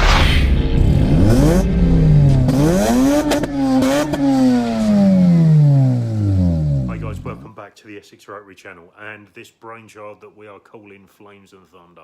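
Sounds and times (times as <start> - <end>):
exhaust cracks: 0.0 - 7.4
rotary engine revving: 0.8 - 6.8.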